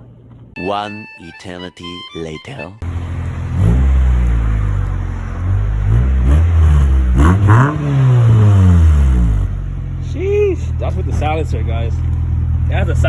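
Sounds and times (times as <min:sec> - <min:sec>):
car engine revving: 0:02.8 - 0:13.0.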